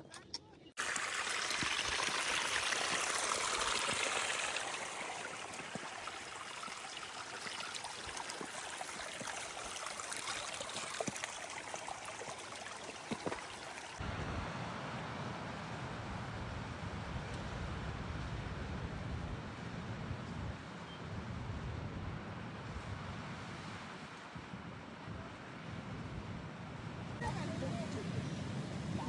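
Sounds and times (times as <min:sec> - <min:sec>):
stream rushing over rocks: 0:00.8 - 0:14.0
low water rumble: 0:00.8 - 0:20.6.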